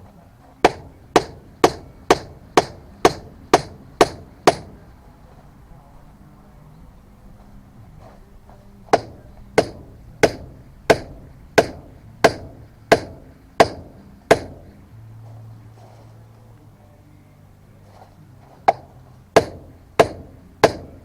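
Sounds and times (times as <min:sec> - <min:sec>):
sharp ringing striking blows: 0:00.6 - 0:04.9, 0:09.0 - 0:14.8.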